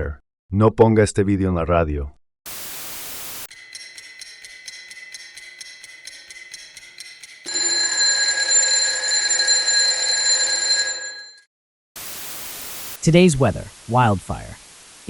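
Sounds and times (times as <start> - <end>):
clock-like ticking: 3.5 - 11.0.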